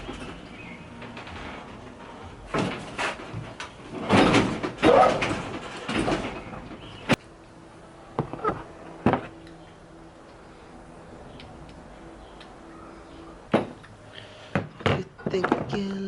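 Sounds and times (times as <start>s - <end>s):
vending machine clunks and rattles: 0.0s - 7.2s.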